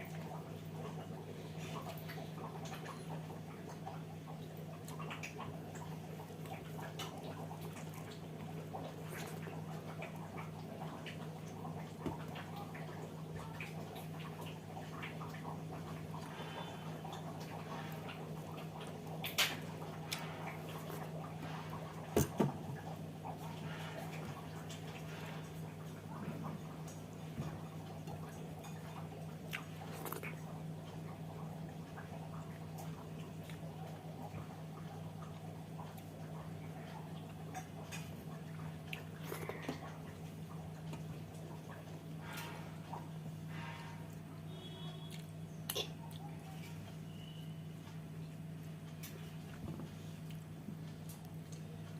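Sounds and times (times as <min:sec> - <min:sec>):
person chewing: 0:29.5 - 0:30.5, 0:38.8 - 0:40.2.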